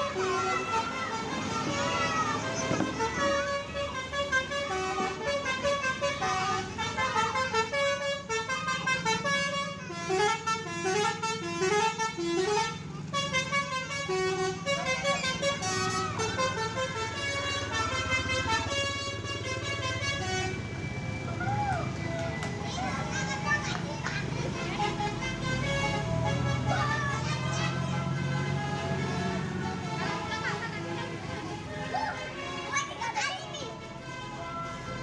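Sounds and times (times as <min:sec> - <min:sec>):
musical bus horn: 0:00.0 - 0:21.1, 0:22.2 - 0:35.0
bus engine running: 0:00.0 - 0:35.0.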